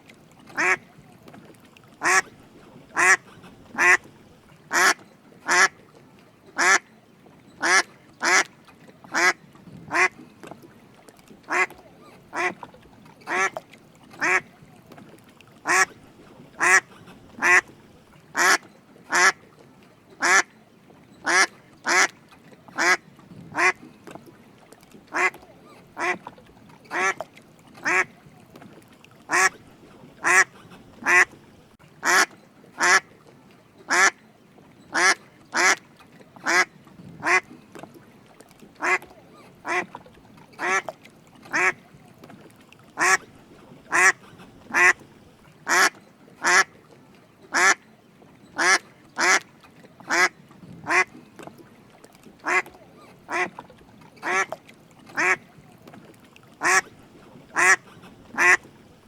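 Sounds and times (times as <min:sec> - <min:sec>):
ducks quacking: 0:00.6 - 0:00.8, 0:02.0 - 0:05.7, 0:06.6 - 0:06.8, 0:09.1 - 0:10.2, 0:11.5 - 0:12.6, 0:14.2 - 0:14.5, 0:15.6 - 0:17.8, 0:18.4 - 0:19.4, 0:21.2 - 0:22.1, 0:23.6 - 0:23.8, 0:25.1 - 0:26.3, 0:26.9 - 0:27.2, 0:27.8 - 0:28.2, 0:29.3 - 0:31.4, 0:32.0 - 0:33.0, 0:33.9 - 0:34.2, 0:34.9 - 0:35.8, 0:36.4 - 0:37.5, 0:38.8 - 0:40.0, 0:40.6 - 0:40.9, 0:41.5 - 0:41.8, 0:43.0 - 0:46.7, 0:48.6 - 0:49.4, 0:50.9 - 0:51.1, 0:52.4 - 0:53.6, 0:54.2 - 0:55.5, 0:56.6 - 0:58.7.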